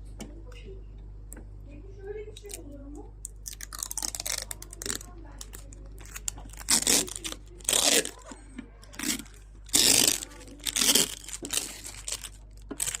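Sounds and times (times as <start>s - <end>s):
packaging crinkling: 3.3s - 13.0s.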